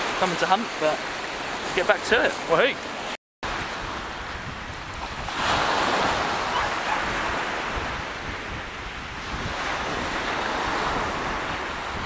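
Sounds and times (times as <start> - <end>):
waves breaking on beach: 0.0 - 12.0
wind on microphone: 3.4 - 12.0.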